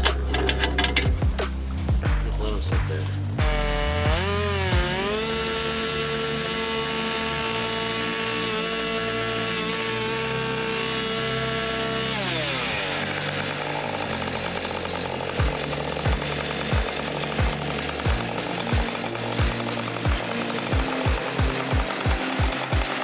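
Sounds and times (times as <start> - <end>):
low thudding beat: 0.0 - 5.3, 15.4 - 23.0
chainsaw running at high revs: 3.3 - 23.0.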